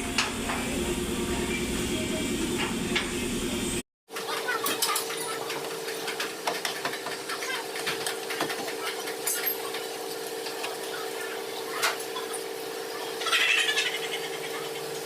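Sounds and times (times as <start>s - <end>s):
steady machine hum: 0.0s - 3.8s.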